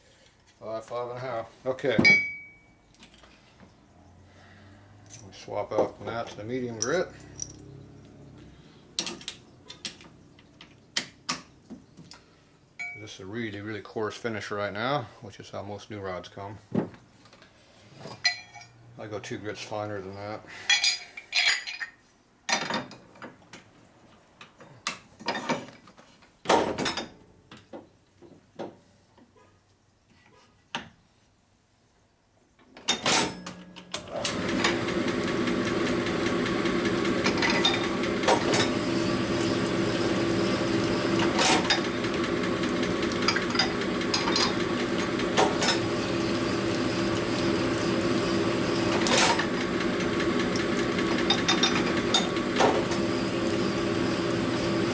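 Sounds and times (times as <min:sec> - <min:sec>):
metal clinks and knocks: 0:06.2 - 0:07.8
honing machine motor hum: 0:34.1 - 0:54.9.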